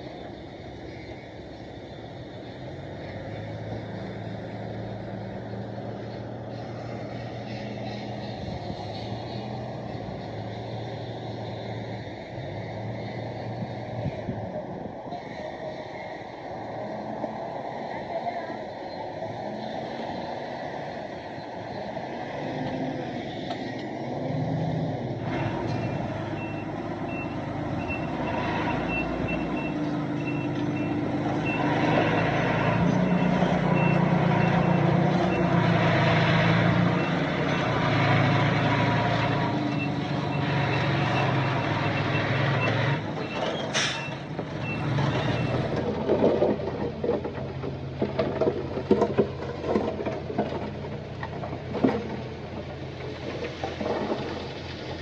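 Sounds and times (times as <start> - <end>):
diesel truck engine under load: 0.0 - 55.0
backup alarm beeping: 25.8 - 35.5
clattering knocks: 43.0 - 54.7.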